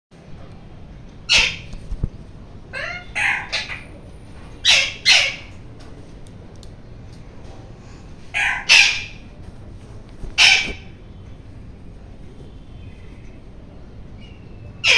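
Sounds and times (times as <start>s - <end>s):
parakeet harsh screeches: 1.3s - 1.7s, 2.8s - 4.0s, 4.6s - 5.5s, 8.3s - 9.2s, 10.4s - 11.0s.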